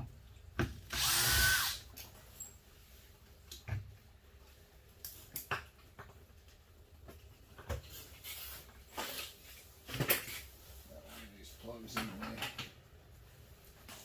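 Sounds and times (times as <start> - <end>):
knocks and clatter of parts: 5.1 - 10.6, 11.8 - 12.8.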